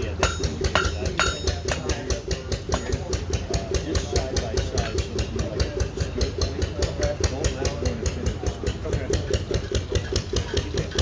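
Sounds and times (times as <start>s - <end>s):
engine running with rapid beats: 0.0s - 11.0s
hammer ringing on anvil: 0.2s - 3.2s.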